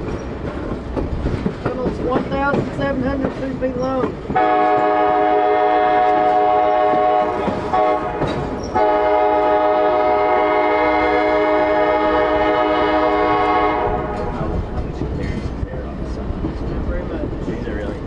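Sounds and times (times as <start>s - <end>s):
train rumbling on rails: 0.0s - 18.0s
locomotive air horn blasts: 4.4s - 14.4s.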